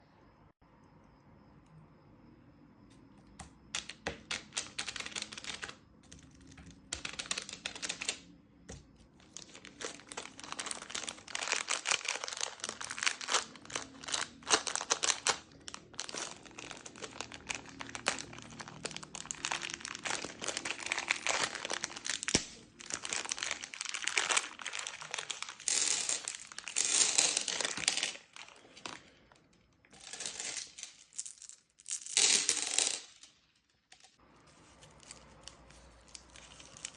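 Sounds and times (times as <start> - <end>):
plastic wrappers crinkling: 6.4 - 8.3, 9.2 - 29.2, 34.6 - 36.9.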